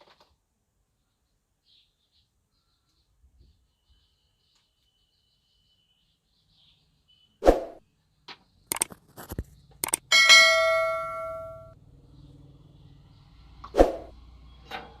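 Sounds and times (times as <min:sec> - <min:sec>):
quick clicks: 0:08.7 - 0:10.1
bell-like ding: 0:10.1 - 0:11.8.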